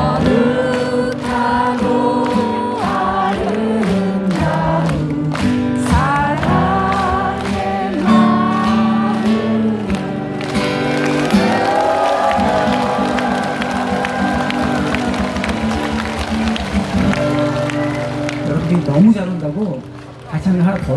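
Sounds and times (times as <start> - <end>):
lead singer: 0.0 - 16.4
crowd singing in chorus: 0.0 - 16.8.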